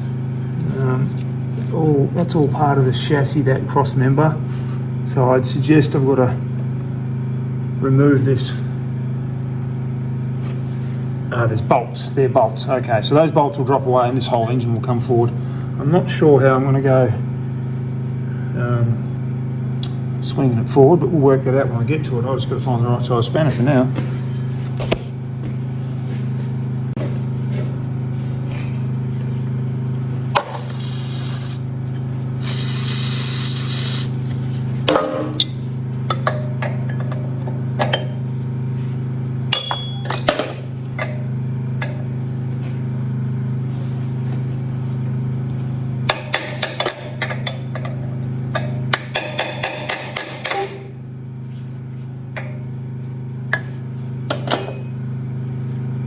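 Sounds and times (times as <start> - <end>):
short hissing bursts: 30.4 - 31.6, 32.4 - 34.2
steady low hum: 30.4 - 31.7, 32.3 - 34.3.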